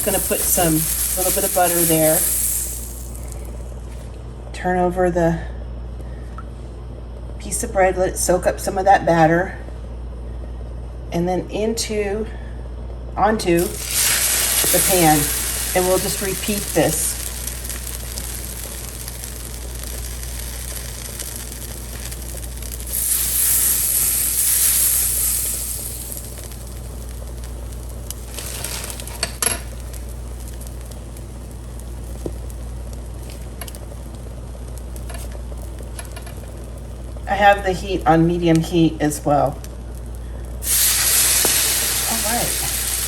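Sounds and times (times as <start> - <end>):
bread sizzling in butter: 0.0 - 3.8, 13.6 - 37.5, 39.3 - 43.0
steady low hum: 0.0 - 43.0.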